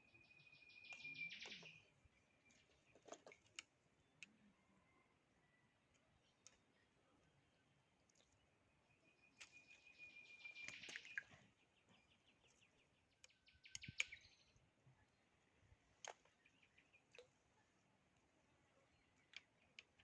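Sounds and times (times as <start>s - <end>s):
bird whistle and trill: 0.4s - 1.8s, 9.5s - 11.3s.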